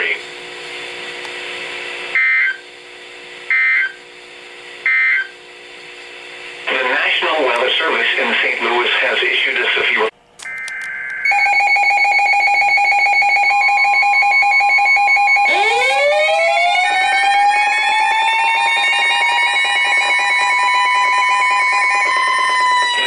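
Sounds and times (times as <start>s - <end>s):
siren-like rising tone: 11.2s - 23.0s.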